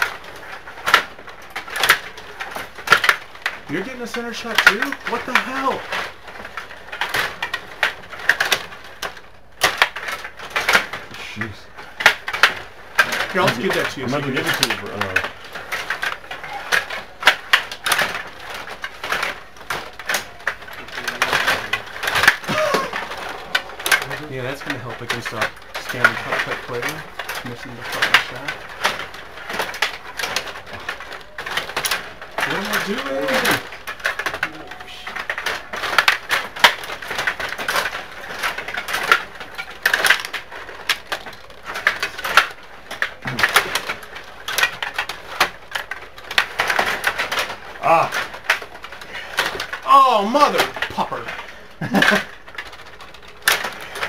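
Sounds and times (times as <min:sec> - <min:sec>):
table hockey clicks and clacks: 0:00.0 - 0:54.0.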